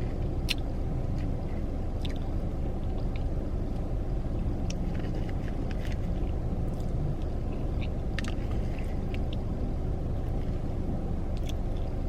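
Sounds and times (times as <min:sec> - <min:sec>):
car cabin rumble: 0:00.0 - 0:12.0
sharp eating clicks: 0:00.3 - 0:01.4, 0:11.3 - 0:12.0.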